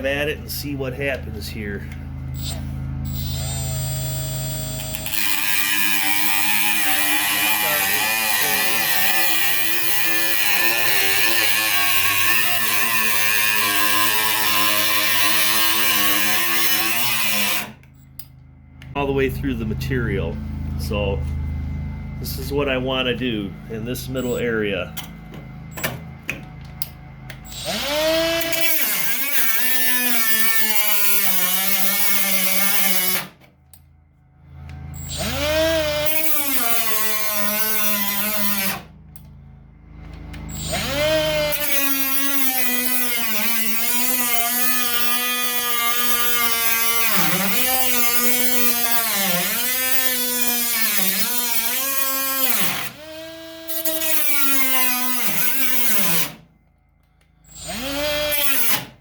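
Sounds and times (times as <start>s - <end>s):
cutoff wheel cutting metal: 2.4s - 18.0s, 27.4s - 33.4s, 35.0s - 39.3s, 40.3s - 56.5s, 57.4s - 59.0s.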